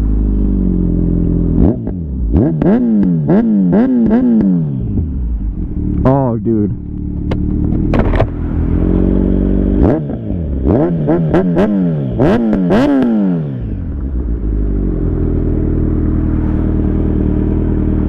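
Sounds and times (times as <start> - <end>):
motorcycle engine revving: 0.0 - 18.0
exhaust cracks: 5.4 - 10.0.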